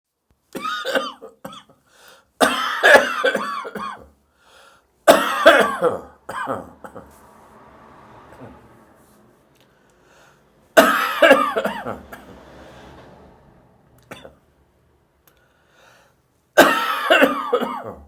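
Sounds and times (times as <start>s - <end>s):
person coughing: 0.6s - 1.7s, 2.4s - 4.1s, 5.1s - 7.1s, 10.8s - 12.3s, 16.6s - 18.0s
faint breathing: 1.8s - 2.4s, 4.2s - 5.0s, 8.4s - 10.7s, 12.3s - 13.3s, 15.2s - 16.4s.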